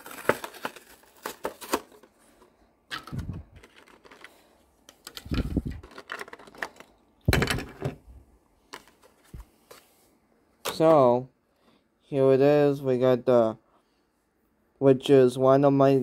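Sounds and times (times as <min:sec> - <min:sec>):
plastic packaging crackling: 0:00.0 - 0:02.1.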